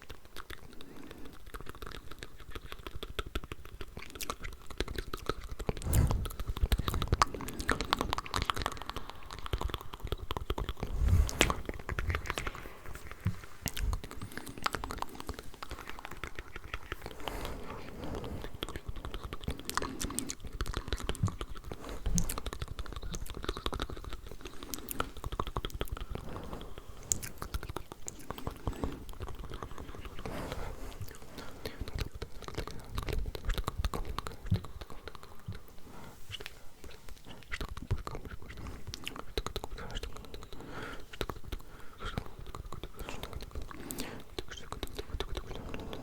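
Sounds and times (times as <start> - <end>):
wet mouth clicks and smacks: 0.0 - 26.2, 30.9 - 35.7, 36.3 - 46.0
low thumps: 5.8 - 7.0.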